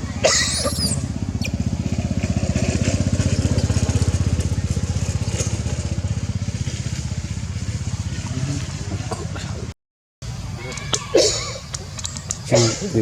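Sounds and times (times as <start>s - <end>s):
small engine running: 0.0s - 9.2s
high squeal: 0.5s - 1.6s.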